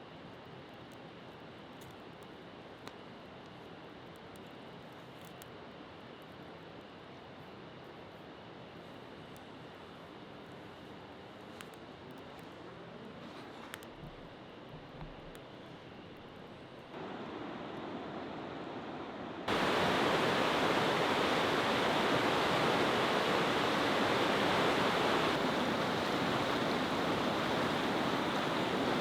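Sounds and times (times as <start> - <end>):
rushing water: 17.0 - 29.0.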